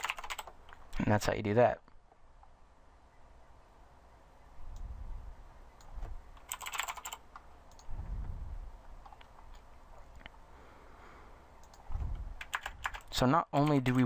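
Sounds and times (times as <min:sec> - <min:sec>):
keyboard typing: 0:00.0 - 0:00.8, 0:05.8 - 0:07.9, 0:11.6 - 0:14.0.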